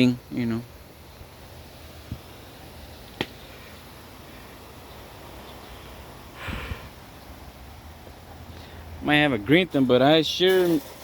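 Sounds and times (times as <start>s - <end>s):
breathy sniff: 6.3s - 7.0s.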